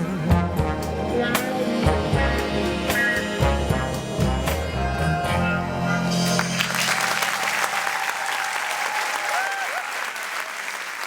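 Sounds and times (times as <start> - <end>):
recorded song with brass: 0.0 - 7.6
people cheering: 6.3 - 11.0
audience applause: 6.4 - 11.0.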